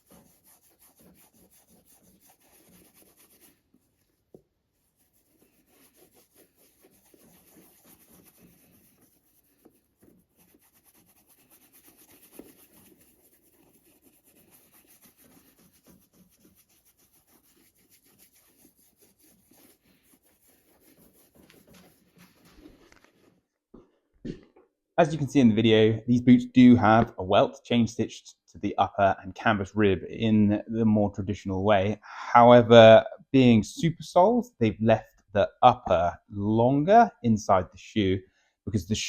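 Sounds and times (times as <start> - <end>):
rubbing and scratching on leather: 0.0 - 23.4.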